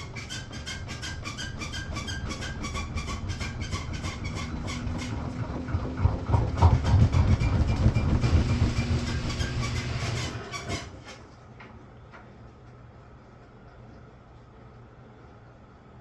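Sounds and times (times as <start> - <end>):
washing machine rapid clicking: 0.0 - 11.3
washing machine rumbling and knocking: 0.0 - 12.4.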